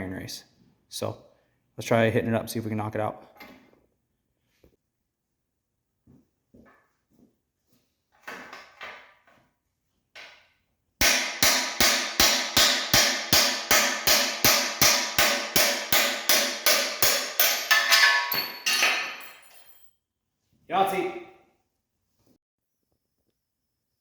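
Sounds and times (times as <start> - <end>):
hammer striking metal: 11.0 - 19.4.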